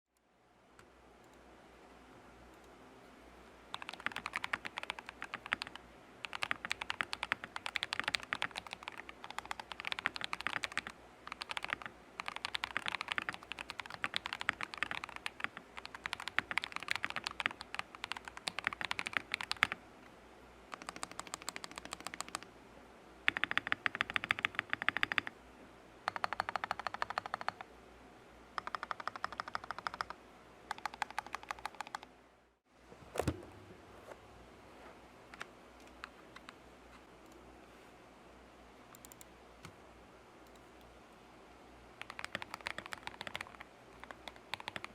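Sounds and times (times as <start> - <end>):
mechanical keyboard typing: 3.7 - 19.8, 20.7 - 22.5, 23.3 - 25.3, 26.1 - 27.7, 28.6 - 32.1, 38.9 - 39.3, 42.0 - 44.9.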